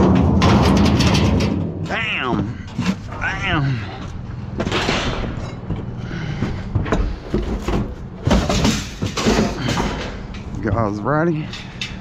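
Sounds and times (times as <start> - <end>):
loud metal bangs: 0.0 - 3.1, 4.3 - 7.2
scrap metal scraping and clanking: 0.0 - 12.0.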